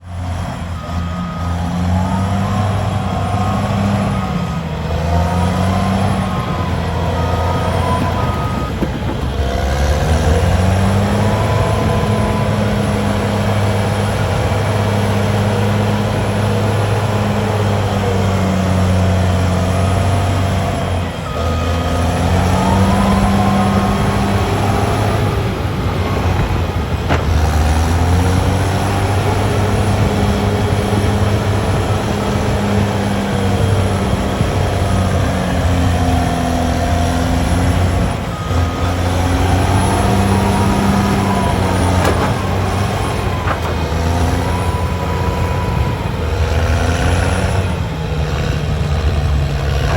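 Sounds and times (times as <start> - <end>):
reversing beeper: 0.0 - 48.0
heavy diesel engine revving: 0.0 - 49.9.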